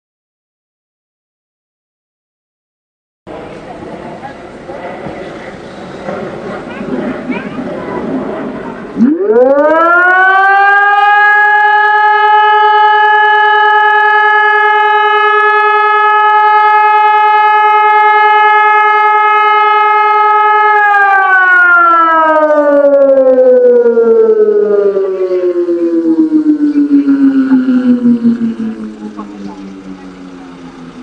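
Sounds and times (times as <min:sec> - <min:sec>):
civil defense siren: 0:08.0 - 0:31.0.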